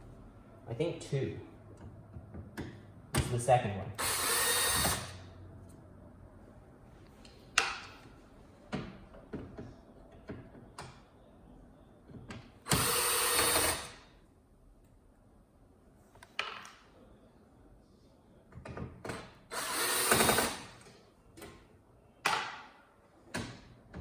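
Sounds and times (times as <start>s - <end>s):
cordless drill running: 4.0s - 5.2s, 12.7s - 14.0s, 19.5s - 20.7s.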